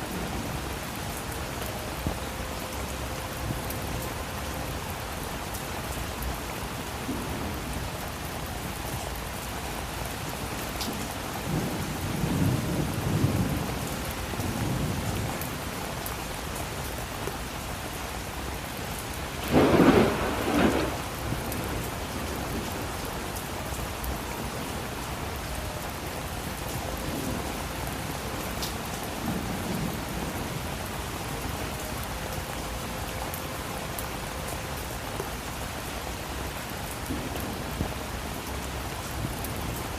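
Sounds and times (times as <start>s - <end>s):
steady rain falling: 0.0s - 39.9s
thunder rumbling: 10.9s - 15.7s, 19.3s - 23.2s
sharp thunderclap: 19.4s - 21.8s.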